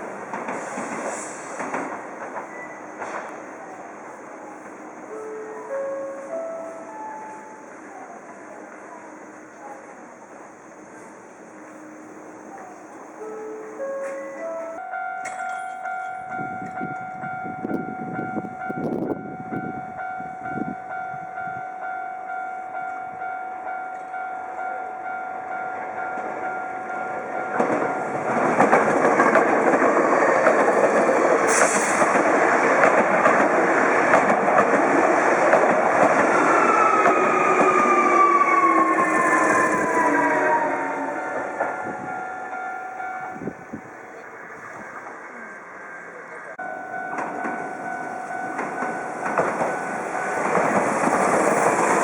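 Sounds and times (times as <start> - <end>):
electric train passing: 0.0 - 52.0
level crossing alarm ringing: 13.2 - 28.4, 36.3 - 43.8, 46.6 - 52.0.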